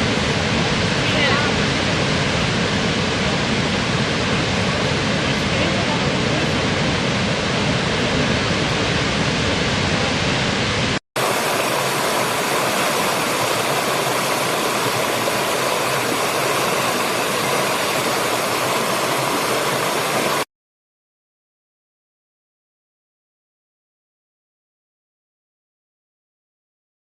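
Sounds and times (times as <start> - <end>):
waterfall rushing: 0.0 - 20.5.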